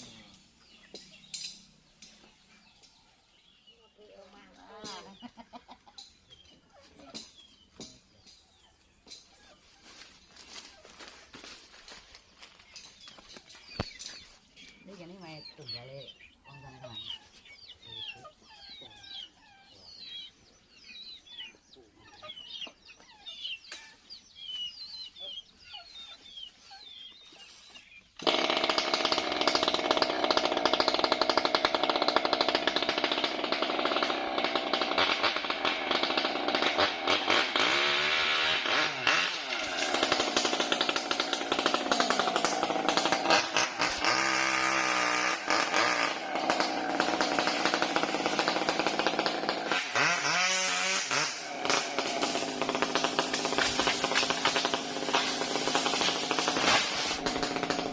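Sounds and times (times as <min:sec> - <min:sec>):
birds chirping: 0:00.0 - 0:57.9
chainsaw engine running: 0:28.2 - 0:57.9.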